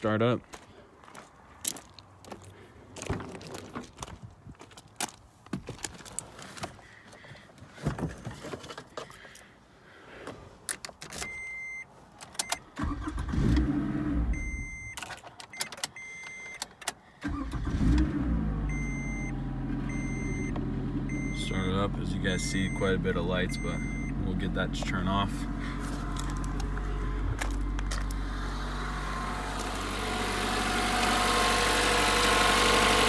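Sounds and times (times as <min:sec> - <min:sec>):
car warning chime beeping: 0:11.2 - 0:13.0, 0:14.3 - 0:16.6, 0:18.6 - 0:25.5
engine cranking: 0:12.5 - 0:18.4
car engine idling: 0:19.3 - 0:33.0.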